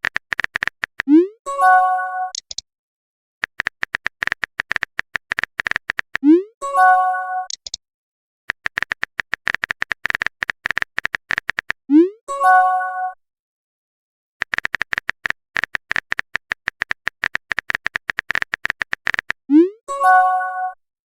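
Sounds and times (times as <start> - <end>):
keyboard tap clicks: 0.0 - 1.1, 3.4 - 6.2, 8.5 - 11.8, 14.4 - 19.4.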